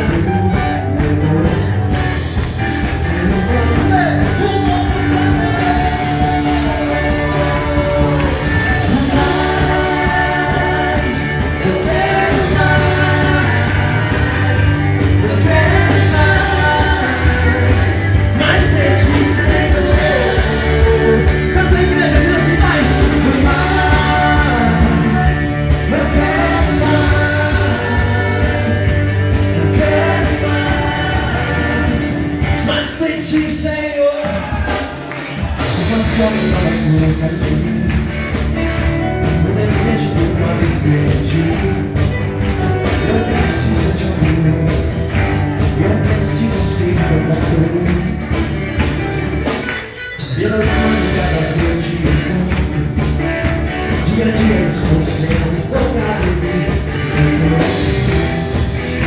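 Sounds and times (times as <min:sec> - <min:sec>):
person singing: 0:00.0 - 0:34.9, 0:39.0 - 0:48.2, 0:50.2 - 0:53.1
rock band playing: 0:00.0 - 0:59.0.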